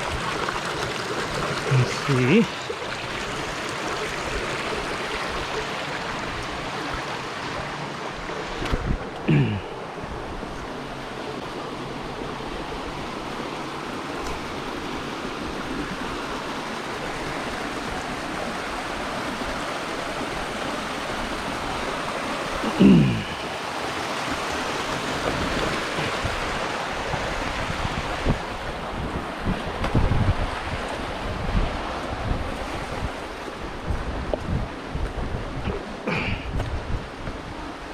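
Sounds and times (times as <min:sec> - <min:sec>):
water rushing in creek: 0:00.0 - 0:37.9
wind: 0:00.0 - 0:37.9.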